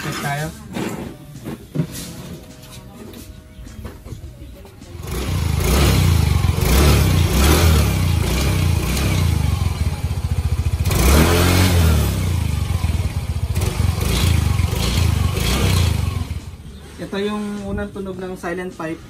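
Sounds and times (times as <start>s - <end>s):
motorcycle throttle blips: 5.0s - 16.8s.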